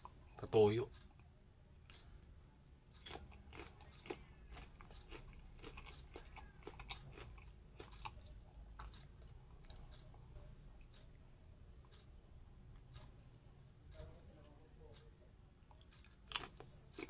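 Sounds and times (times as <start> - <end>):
crunchy biting and chewing: 2.9 - 10.1, 15.7 - 17.0.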